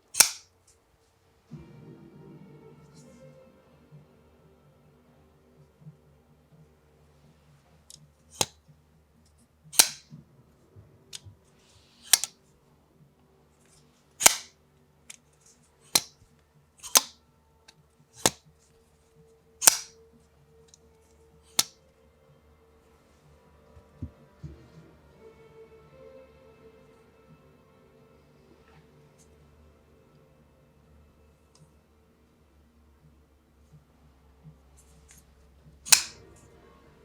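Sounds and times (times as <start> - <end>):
folding knife clicking open and shut: 0.0 - 0.5, 8.3 - 8.6, 9.8 - 10.0, 12.0 - 12.3, 14.2 - 14.5, 15.9 - 16.1, 16.8 - 17.2, 18.2 - 18.4, 19.6 - 20.0, 35.9 - 36.2.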